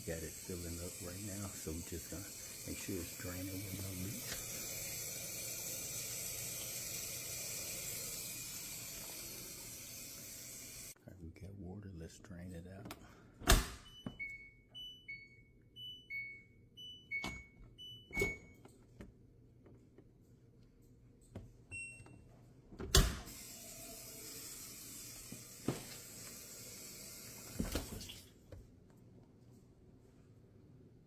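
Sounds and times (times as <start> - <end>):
drain pump running: 0.0 - 11.0, 23.3 - 28.0
two-tone electronic beeps: 13.9 - 18.6.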